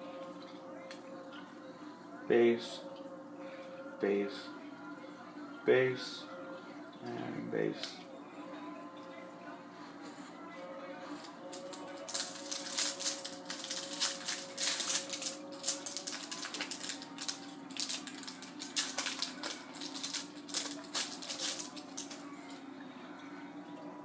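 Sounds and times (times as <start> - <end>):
wrapper crinkling: 11.1 - 22.6.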